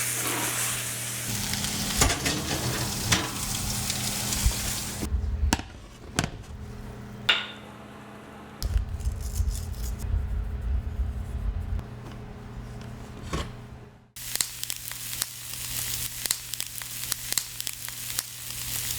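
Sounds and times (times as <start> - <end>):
steak sizzling in a pan: 0.0 - 5.1, 14.2 - 18.9
low handling rumble: 3.7 - 7.2, 8.6 - 14.1.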